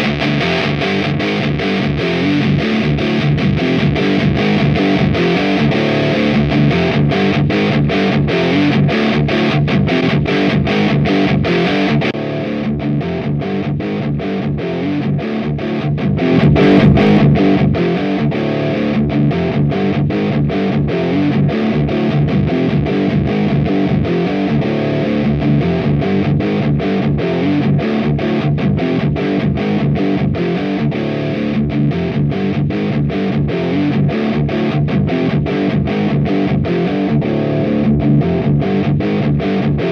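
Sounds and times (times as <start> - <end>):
distorted electric guitar riff: 16.0 - 21.3, 35.0 - 39.9.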